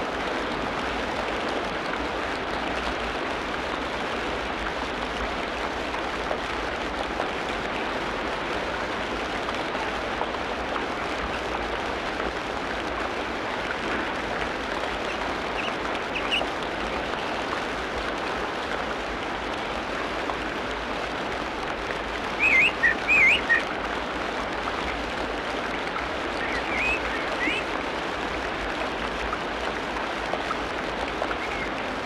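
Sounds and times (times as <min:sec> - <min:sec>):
birds calling: 0:15.6 - 0:16.4, 0:22.4 - 0:23.6, 0:26.4 - 0:27.6
warbling whistled bird phrase: 0:22.4 - 0:23.6, 0:26.4 - 0:27.6.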